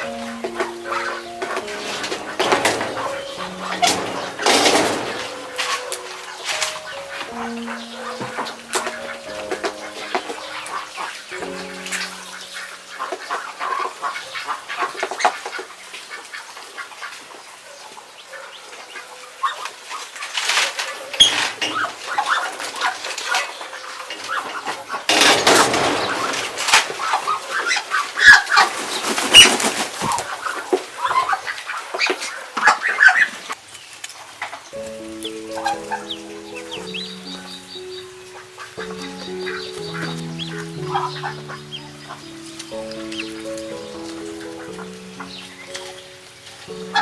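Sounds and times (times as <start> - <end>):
ducks and ducklings calling: 0.0 - 47.0
noisy scuffle with wing flapping: 25.1 - 33.3.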